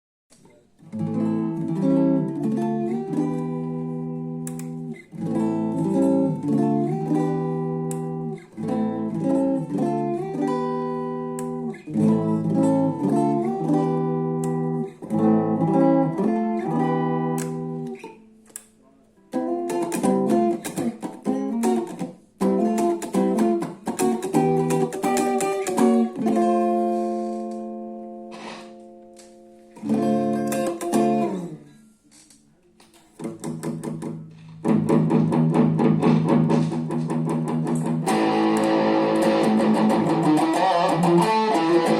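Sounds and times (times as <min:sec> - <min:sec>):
guitar chords strummed: 0:00.8 - 0:32.0, 0:33.1 - 0:41.9.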